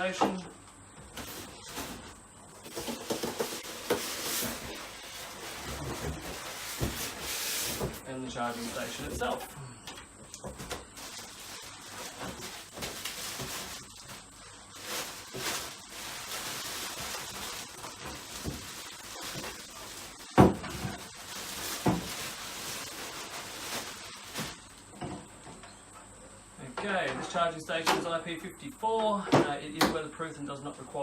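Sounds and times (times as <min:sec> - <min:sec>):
rustling of packaging: 0:01.1 - 0:09.5, 0:10.3 - 0:24.8.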